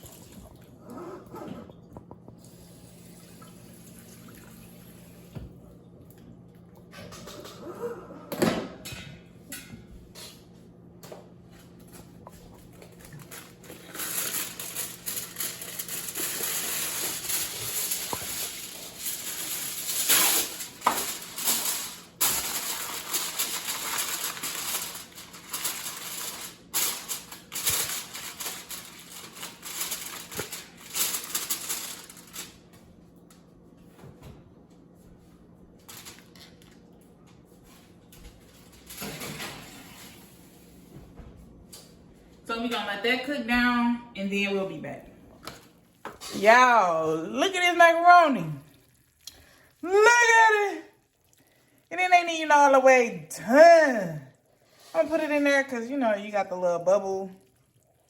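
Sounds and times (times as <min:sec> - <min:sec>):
roast sizzling in a pot: 0:13.2 - 0:32.6.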